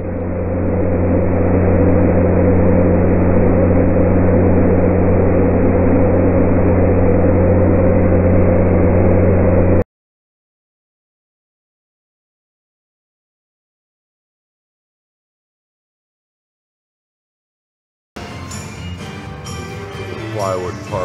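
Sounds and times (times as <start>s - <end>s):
machine motor humming: 0.0s - 9.8s.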